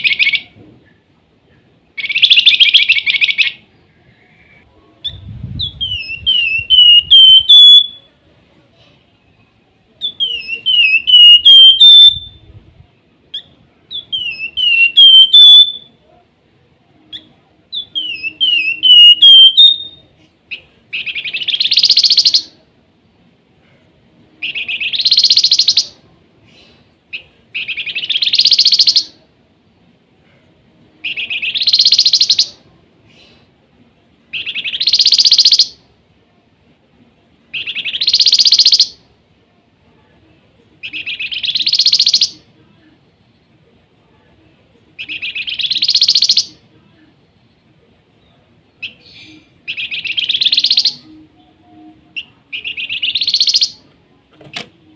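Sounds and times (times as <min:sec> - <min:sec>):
songbird whistled chirping: 0:02.0 - 0:03.6, 0:04.2 - 0:08.3, 0:10.0 - 0:12.5, 0:13.3 - 0:16.0, 0:17.1 - 0:20.1, 0:21.0 - 0:22.5, 0:24.4 - 0:26.0, 0:27.6 - 0:29.2, 0:31.0 - 0:32.6, 0:34.4 - 0:35.8, 0:37.6 - 0:39.0, 0:40.1 - 0:43.1, 0:44.4 - 0:47.5, 0:48.1 - 0:54.0.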